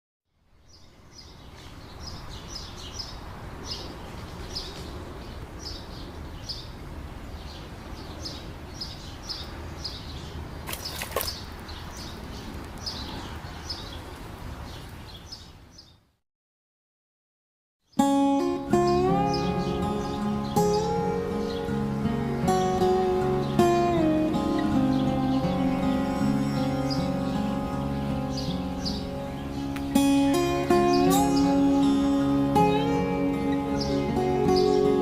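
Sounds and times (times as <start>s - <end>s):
bird chirping: 0.6s - 16.1s, 17.8s - 35.0s.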